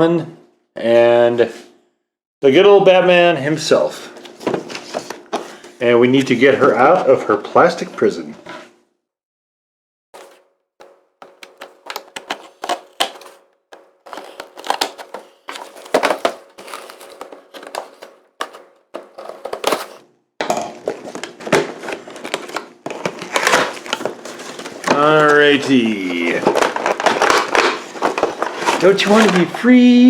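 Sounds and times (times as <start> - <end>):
plastic and cardboard crinkling: 10.2 - 20.0, 20.9 - 30.0.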